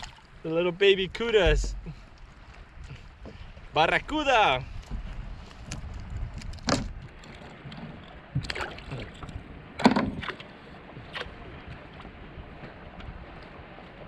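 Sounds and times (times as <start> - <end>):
wind and water hiss: 0.0 - 14.0
splashes and knocks at kayak: 1.1 - 3.5, 4.8 - 14.0.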